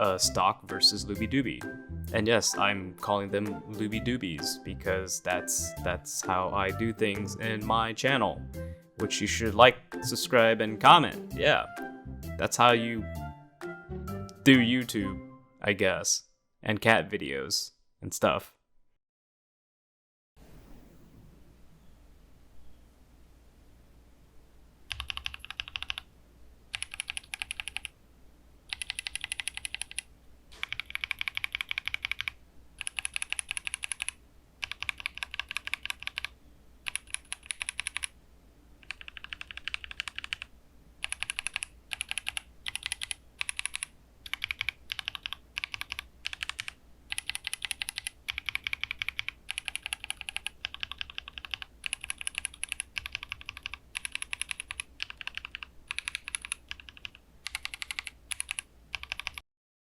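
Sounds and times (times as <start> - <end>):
mechanical keyboard typing: 24.9 - 26.1, 26.7 - 27.9, 28.7 - 38.1, 38.8 - 59.4.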